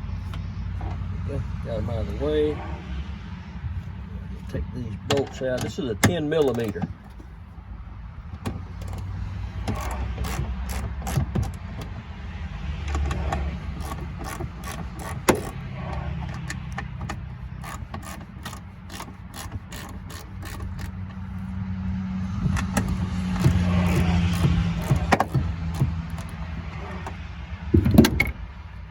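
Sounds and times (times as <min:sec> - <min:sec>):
socket ratchet clicking: 0:08.4 - 0:12.0, 0:12.8 - 0:21.4, 0:22.3 - 0:27.2.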